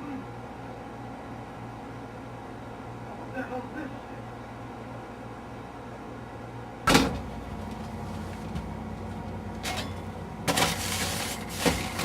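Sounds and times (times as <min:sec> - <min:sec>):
refrigerator hum: 0:00.0 - 0:12.0
refrigerator knock: 0:06.9 - 0:07.4
items rustling and scraping: 0:07.3 - 0:12.0.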